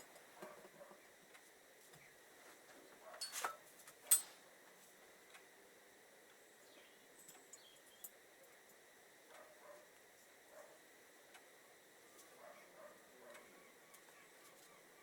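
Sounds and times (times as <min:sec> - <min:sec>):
light clicks of metal parts: 0:03.2 - 0:04.4.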